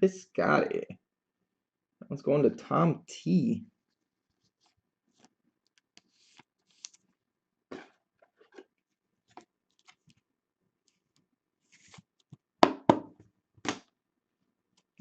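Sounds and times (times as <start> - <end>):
cards and packaging rustling: 4.4 - 7.1, 7.7 - 10.2, 10.9 - 12.4.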